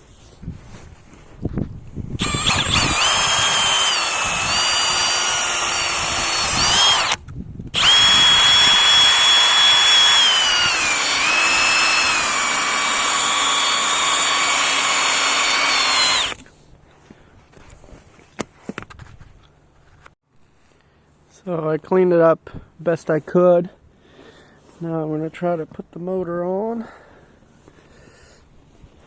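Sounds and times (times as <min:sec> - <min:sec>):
electric power tool whining: 0:02.2 - 0:16.4.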